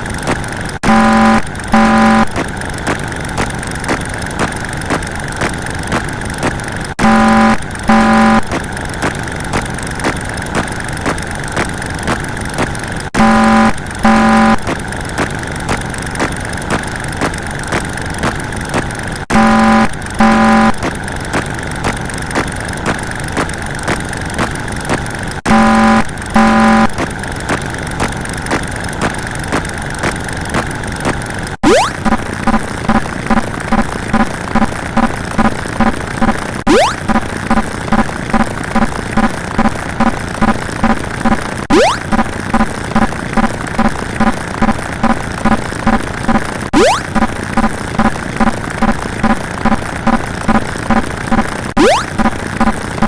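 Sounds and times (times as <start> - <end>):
engine running: 0.0 - 53.0
short horn beeps: 0.8 - 2.4, 7.0 - 8.5, 13.2 - 14.7, 19.3 - 20.8, 25.5 - 27.0.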